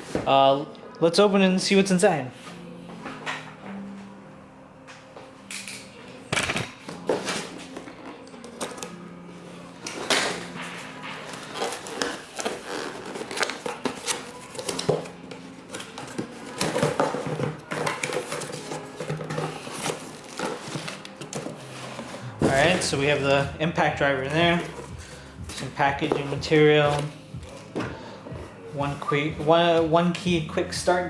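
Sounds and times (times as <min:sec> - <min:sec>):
cardboard rustling and scraping: 0:10.0 - 0:30.1.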